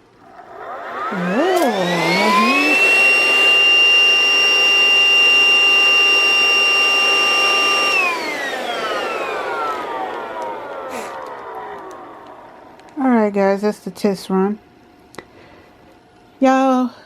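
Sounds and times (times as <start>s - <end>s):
vacuum cleaner motor whine: 0.0s - 13.2s.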